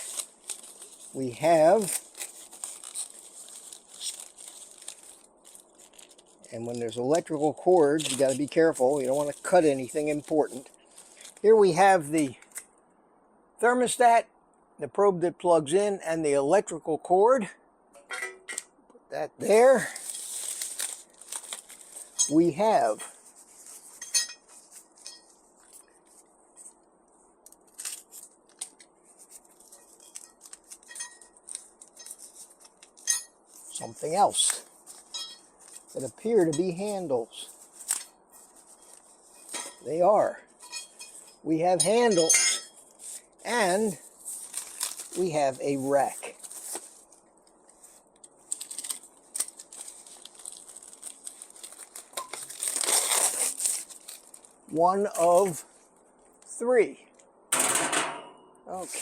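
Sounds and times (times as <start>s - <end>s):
packaging rustling: 0.0s - 11.6s, 19.4s - 26.9s, 27.5s - 41.4s, 42.7s - 56.3s.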